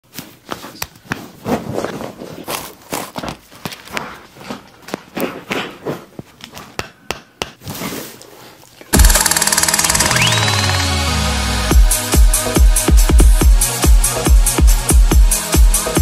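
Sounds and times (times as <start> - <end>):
sharp clicks and knocks: 9.0 - 11.0.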